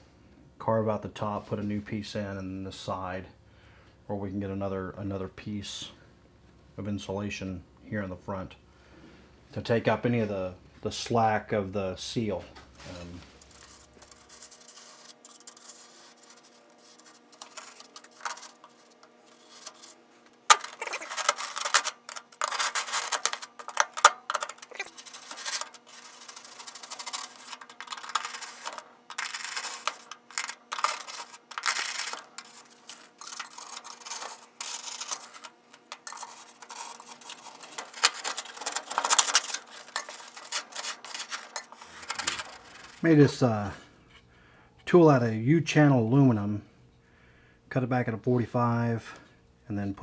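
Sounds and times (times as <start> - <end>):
hand scraper scraping insulation: 12.8 - 43.4.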